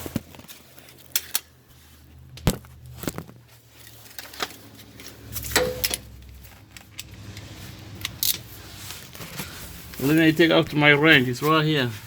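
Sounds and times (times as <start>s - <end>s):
metallic tool clicks and knocks: 5.3s - 8.4s.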